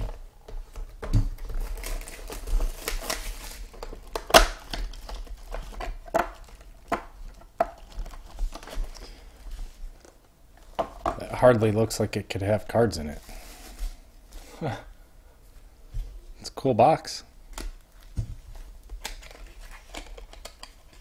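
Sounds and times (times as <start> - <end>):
packaging crinkling and tearing: 0.8 - 10.2, 18.8 - 21.0.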